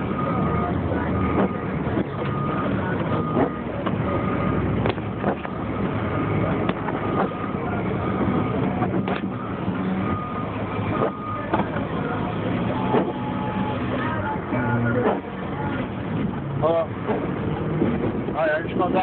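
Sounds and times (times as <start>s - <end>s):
truck engine running: 0.0s - 19.0s
short high beeps: 12.7s - 14.0s.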